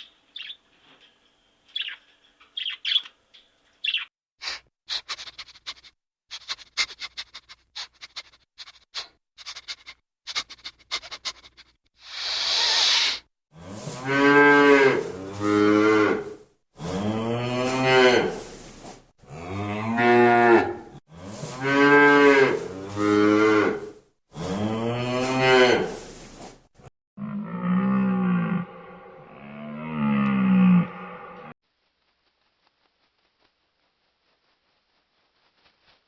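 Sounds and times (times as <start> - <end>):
cow mooing: 13.6 - 18.4, 19.3 - 25.9, 27.2 - 31.5.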